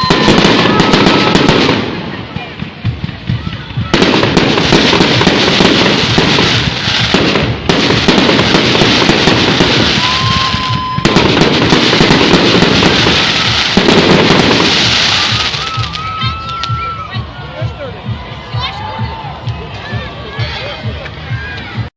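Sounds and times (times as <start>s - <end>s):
high firework whistle: 0.0s - 1.8s, 8.1s - 17.1s
fireworks crackling bangs: 0.0s - 17.0s.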